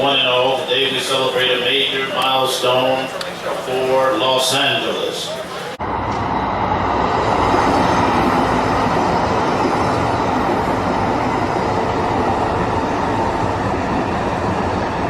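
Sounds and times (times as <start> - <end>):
train wheels rumbling on track: 0.0 - 15.0.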